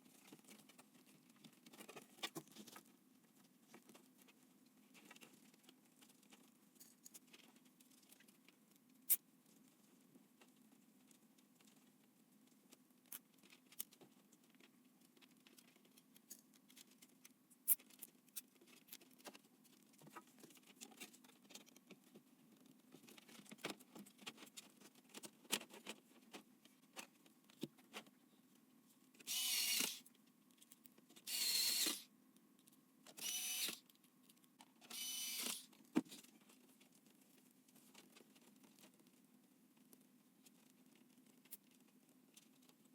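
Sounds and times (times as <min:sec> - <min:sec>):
loud rasping bursts: 0:29.3 - 0:30.0, 0:31.3 - 0:32.1, 0:33.2 - 0:33.8, 0:34.9 - 0:35.7.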